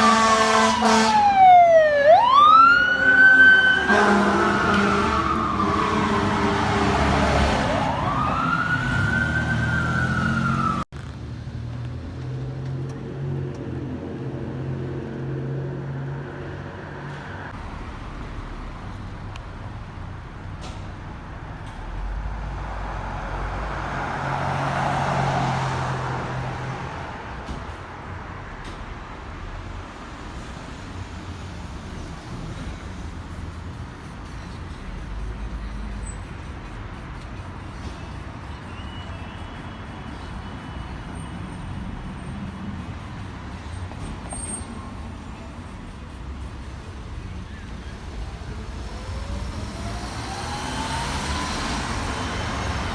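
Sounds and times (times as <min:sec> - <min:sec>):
siren wailing: 0:00.8 - 0:10.8.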